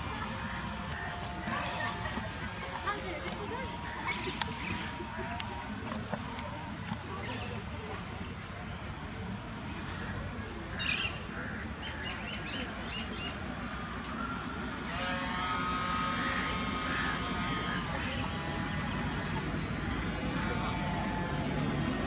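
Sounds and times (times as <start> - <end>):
drone propeller whining: 0.0 - 7.7, 12.8 - 22.0
constant rushing noise: 0.0 - 22.0.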